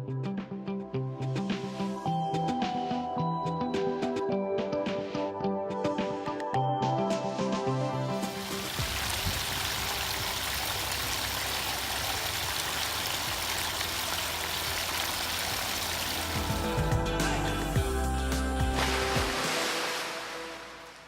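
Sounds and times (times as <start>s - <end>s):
music: 0.0s - 12.6s, 13.3s - 21.0s
waterfall cascading and splashing: 8.3s - 17.0s, 18.6s - 21.0s.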